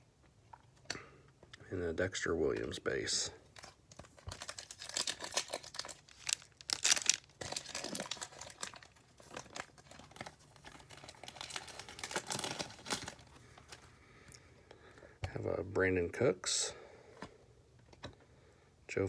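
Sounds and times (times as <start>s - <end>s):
wrapper crinkling and rustling: 2.6s - 13.9s.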